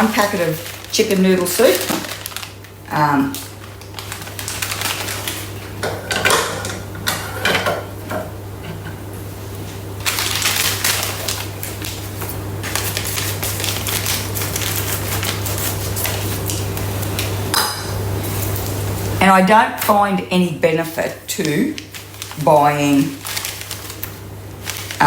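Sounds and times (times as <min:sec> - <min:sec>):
packet crinkling and rustling: 0:00.0 - 0:05.8, 0:10.0 - 0:17.5, 0:20.8 - 0:25.0.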